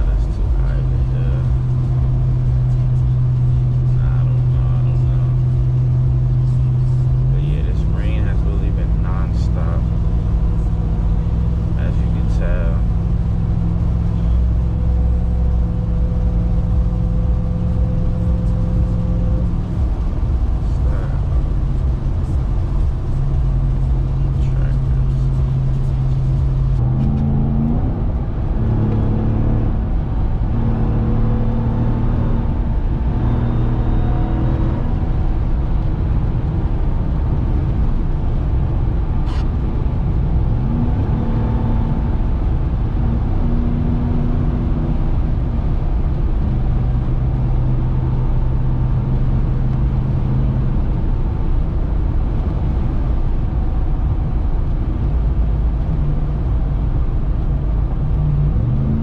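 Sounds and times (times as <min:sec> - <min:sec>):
truck engine while driving: 0:00.0 - 0:59.0.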